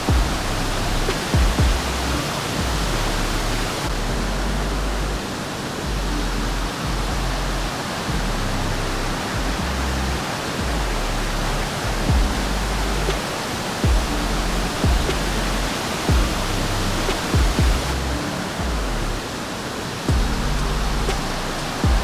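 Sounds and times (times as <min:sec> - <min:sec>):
music with slow low notes: 0:00.0 - 0:19.4, 0:20.1 - 0:22.0
waterfall rushing: 0:00.0 - 0:22.0.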